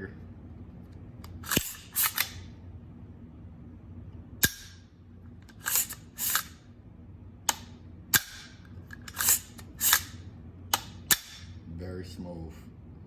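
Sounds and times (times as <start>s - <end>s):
charging handle metallic rasps: 9.0s - 10.2s.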